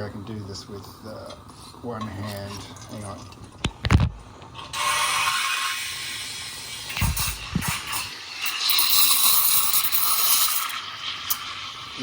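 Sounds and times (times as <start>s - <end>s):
steam hissing from steam wand: 4.7s - 12.0s.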